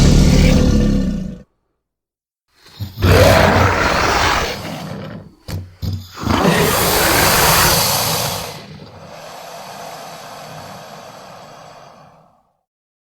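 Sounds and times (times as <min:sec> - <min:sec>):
breathy creature hissing: 0:02.8 - 0:05.4, 0:06.2 - 0:12.6.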